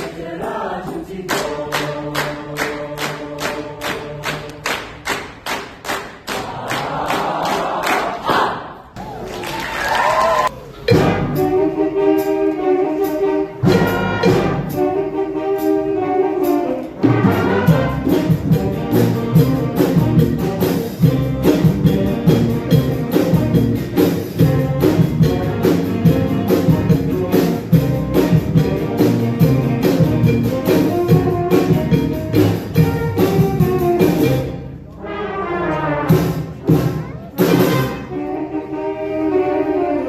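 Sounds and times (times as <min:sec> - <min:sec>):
band playing with drums: 0:10.5 - 0:34.8, 0:35.9 - 0:38.3
held brass chords: 0:10.6 - 0:40.0.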